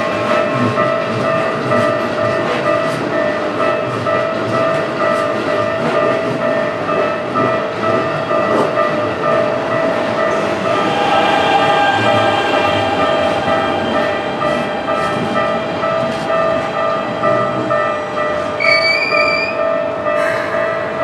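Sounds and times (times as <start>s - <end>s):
level-crossing warning bell dinging: 0.0s - 21.0s
train running over crossing: 0.0s - 21.0s
brief high squeal: 18.6s - 19.6s.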